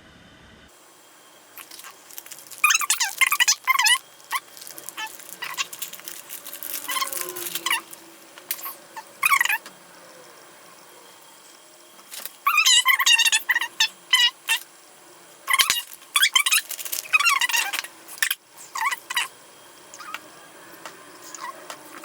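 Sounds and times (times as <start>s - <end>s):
animal high-pitched cries: 1.6s - 9.6s, 12.4s - 14.6s.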